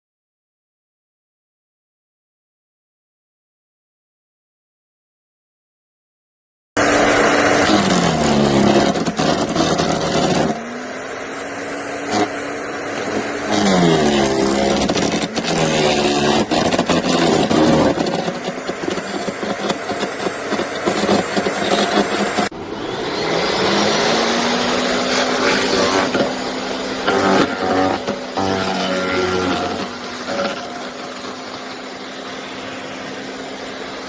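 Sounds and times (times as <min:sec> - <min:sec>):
wood chipper motor: 0:06.8 - 0:34.0
wood cracking in chipper: 0:06.8 - 0:34.0.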